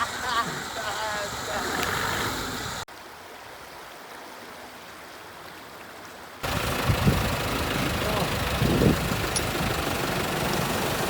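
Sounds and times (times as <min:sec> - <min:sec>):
flowing creek water: 0:00.0 - 0:11.0
off-road vehicle engine running: 0:06.4 - 0:11.0.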